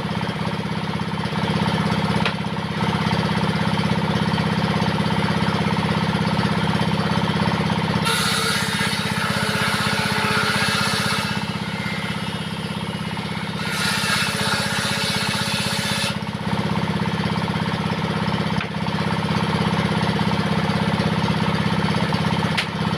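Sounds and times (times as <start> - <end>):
diesel engine chugging: 0.0 - 8.1, 11.4 - 13.6, 16.2 - 22.9
saw blade ripping wood: 8.0 - 16.3.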